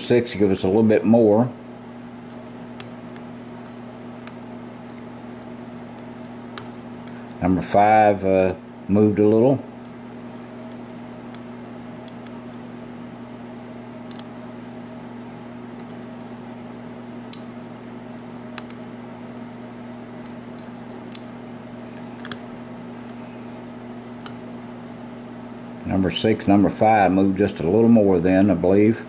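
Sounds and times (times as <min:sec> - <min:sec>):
lock pick clicking: 0:14.1 - 0:14.3.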